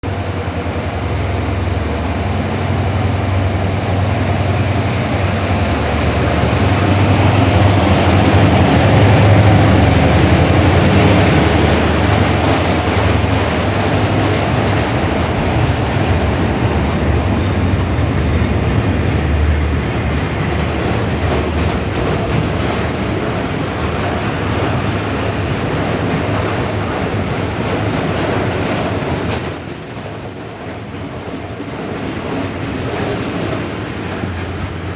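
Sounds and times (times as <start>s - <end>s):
locomotive engine rumble: 0.0s - 34.9s
train wagons rolling past: 0.1s - 34.9s
train wheel squeals and clicks: 11.0s - 18.2s, 20.2s - 34.9s.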